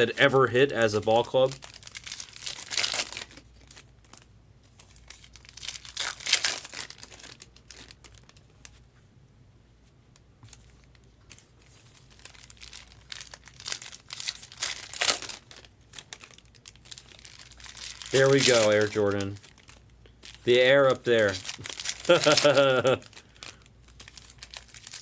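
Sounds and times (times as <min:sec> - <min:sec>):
card wrappers crinkling and tearing: 0:00.0 - 0:08.8, 0:10.5 - 0:25.0.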